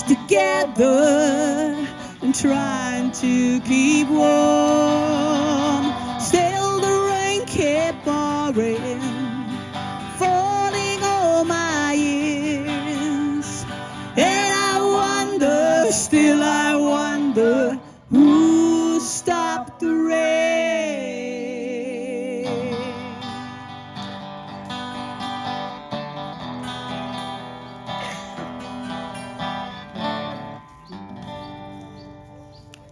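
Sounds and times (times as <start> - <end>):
people singing: 0.0 - 23.4
guitar accompaniment: 0.0 - 32.9.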